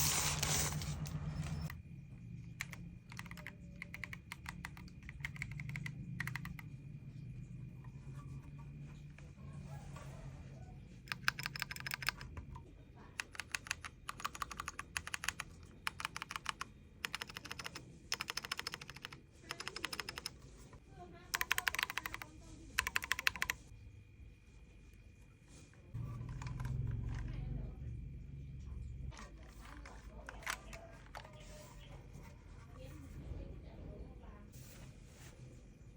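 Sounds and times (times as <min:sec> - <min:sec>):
mechanical keyboard typing: 0:02.6 - 0:06.8, 0:11.0 - 0:12.6, 0:13.2 - 0:23.7, 0:26.0 - 0:27.5, 0:29.1 - 0:31.8.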